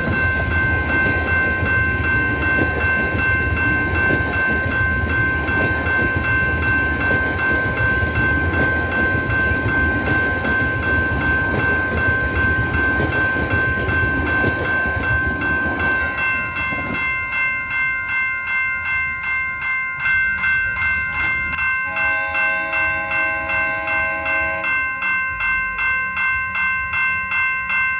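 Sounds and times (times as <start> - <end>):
train rumbling past: 0.0 - 17.4
level-crossing warning bell: 0.0 - 27.9.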